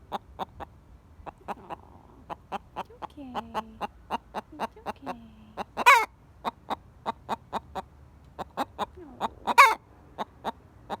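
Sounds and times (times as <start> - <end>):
hen clucking sharply: 0.0 - 11.0
hen squawking: 8.6 - 11.0.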